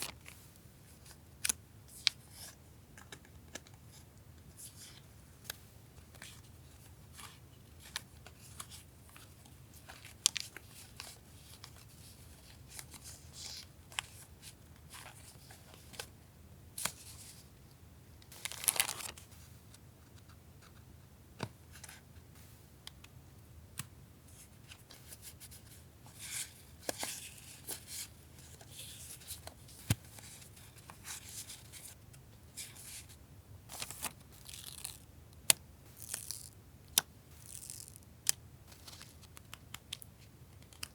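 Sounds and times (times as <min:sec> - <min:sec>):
paper crinkling and rustling: 0:18.3 - 0:19.3, 0:32.6 - 0:35.0, 0:38.7 - 0:40.0.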